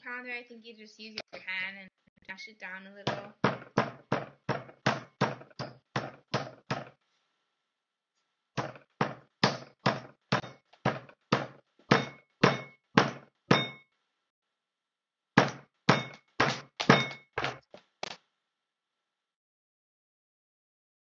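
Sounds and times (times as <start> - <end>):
meat being pounded: 3.1 - 7.0, 8.6 - 13.8, 15.4 - 17.7.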